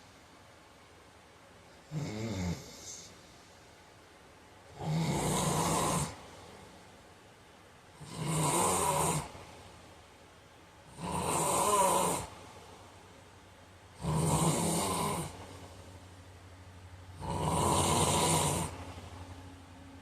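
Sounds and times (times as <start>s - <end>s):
man snoring: 1.9s - 3.2s, 4.7s - 6.2s, 8.0s - 9.4s, 10.9s - 12.4s, 14.0s - 15.5s, 17.1s - 18.9s.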